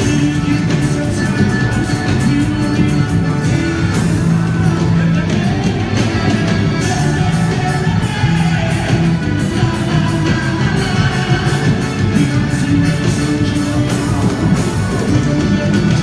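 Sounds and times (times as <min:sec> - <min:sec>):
loud music with a beat: 0:00.0 - 0:16.0
person singing: 0:00.0 - 0:16.0.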